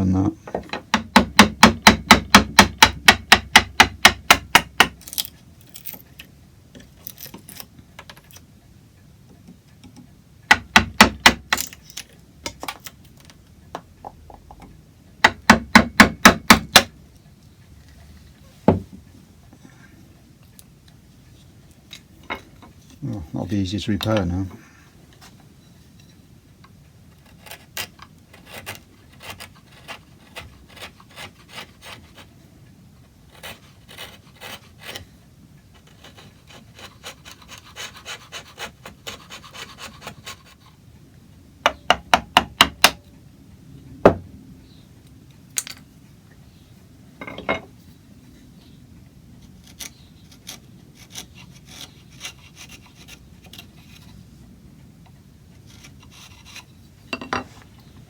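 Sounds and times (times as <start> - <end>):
hand tool scraping wood: 27.2 - 32.3, 33.3 - 35.1, 35.8 - 40.7, 49.6 - 54.2, 55.7 - 56.8.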